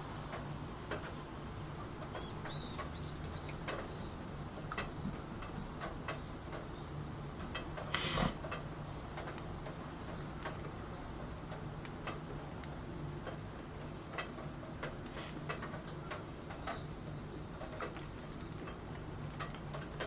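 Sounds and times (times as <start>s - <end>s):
steady rain: 0.0s - 20.0s
burst of noise: 7.9s - 8.4s.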